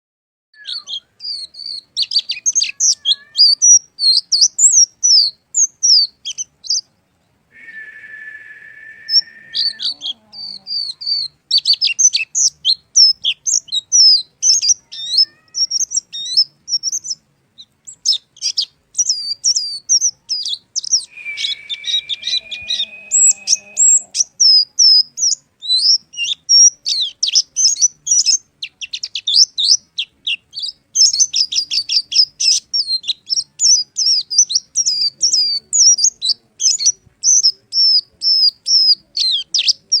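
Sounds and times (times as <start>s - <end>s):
long rising bird whistle: 7.6s - 10.1s, 20.9s - 24.2s
bird twittering chirps: 7.6s - 36.1s.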